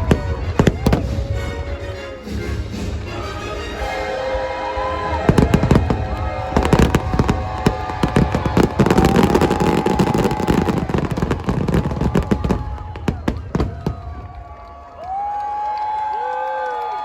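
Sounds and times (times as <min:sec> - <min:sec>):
fireworks crackling: 0:00.0 - 0:01.8, 0:04.7 - 0:15.4
music with long held notes: 0:00.0 - 0:09.0.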